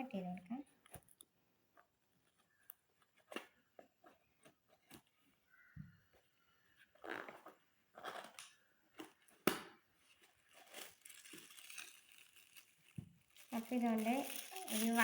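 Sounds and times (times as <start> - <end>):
soft rustling: 10.0 - 15.0
packaging tearing and crinkling: 10.2 - 15.0.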